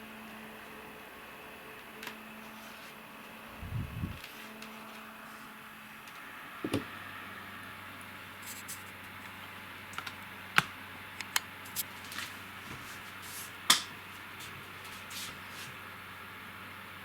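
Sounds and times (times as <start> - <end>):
computer fan hiss: 0.0 - 17.0.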